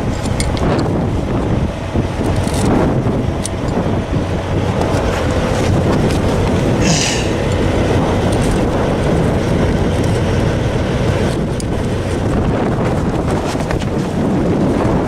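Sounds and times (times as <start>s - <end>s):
metal tire chains jingling: 0.0s - 0.9s, 2.2s - 3.9s
low rumble: 0.0s - 15.0s
wind buffeting microphone: 0.0s - 15.0s.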